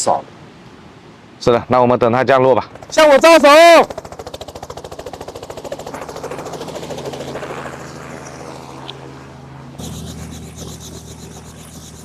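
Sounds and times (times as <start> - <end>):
helicopter engine drone: 2.6 - 12.0
helicopter rotor thudding: 2.6 - 12.0.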